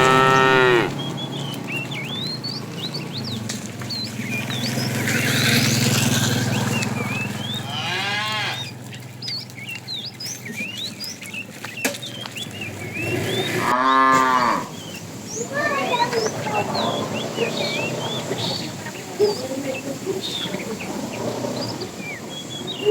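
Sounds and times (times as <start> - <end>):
cows mooing: 0.0 - 1.1, 7.4 - 8.8, 12.7 - 14.9
birds chirping: 0.0 - 22.9.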